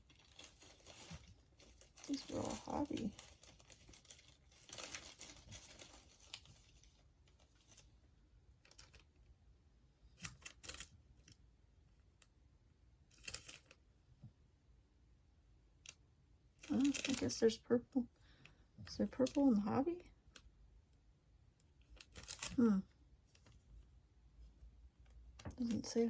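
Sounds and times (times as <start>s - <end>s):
trading cards rustling: 0.1s - 7.9s, 16.6s - 17.4s.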